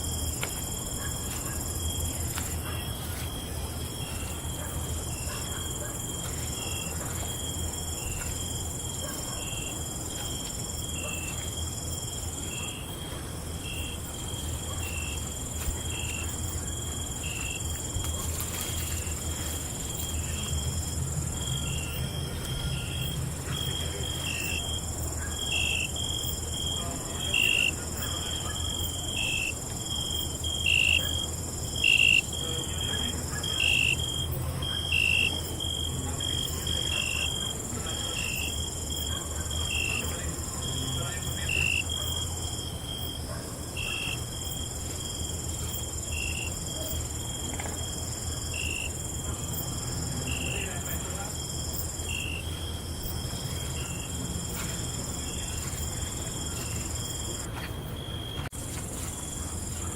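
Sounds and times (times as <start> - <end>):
crickets chirping: 0.0 - 59.9.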